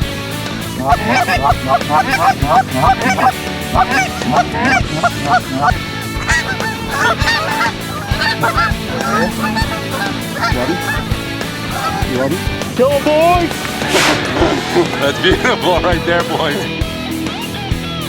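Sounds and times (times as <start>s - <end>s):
goose honking and clucking: 0.7s - 12.4s.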